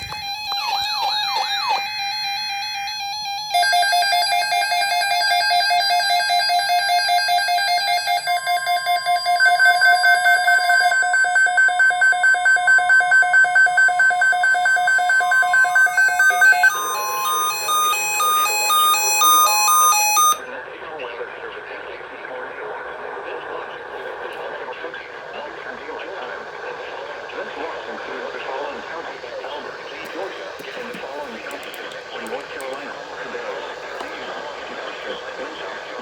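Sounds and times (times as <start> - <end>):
pulsing synthesized tones: 0.0 - 20.4
quick stepping synth melody: 13.4 - 20.4.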